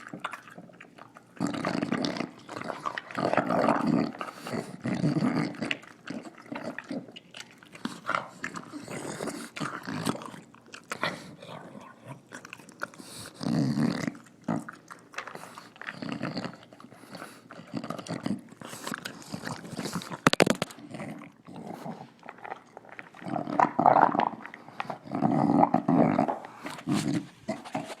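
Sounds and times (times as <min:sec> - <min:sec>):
dog snorting and grunting: 0:00.0 - 0:07.2, 0:07.8 - 0:28.0.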